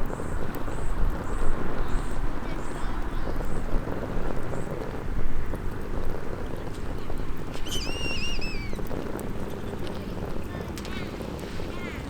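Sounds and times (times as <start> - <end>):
campfire crackling: 0.0 - 12.0
wind buffeting microphone: 0.0 - 12.0
bird whistled call: 7.6 - 8.8.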